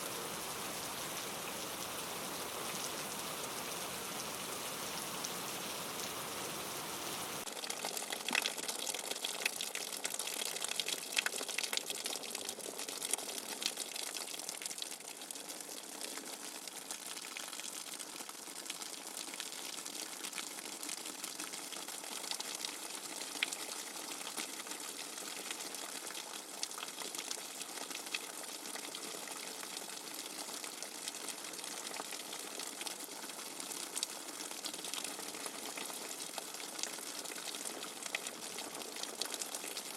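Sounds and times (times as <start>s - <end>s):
steady water-like hiss: 0.0s - 7.5s
small crackles and ticks: 7.2s - 39.9s.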